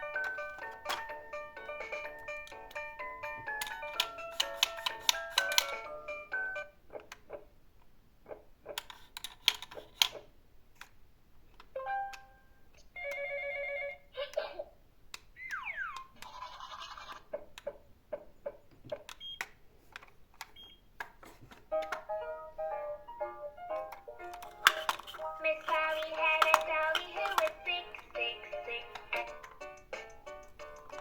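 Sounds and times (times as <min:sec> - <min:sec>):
plastic toy vehicles clattering: 0:00.1 - 0:01.2, 0:08.8 - 0:10.2, 0:23.9 - 0:29.6
electronic toy sound effects: 0:15.4 - 0:17.2.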